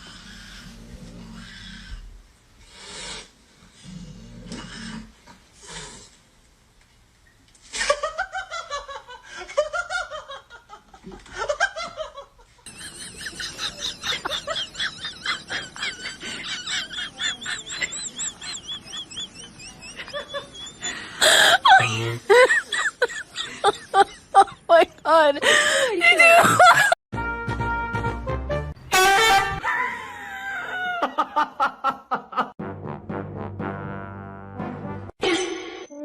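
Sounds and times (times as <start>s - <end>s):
high-pitched laughter: 11.4s - 24.9s.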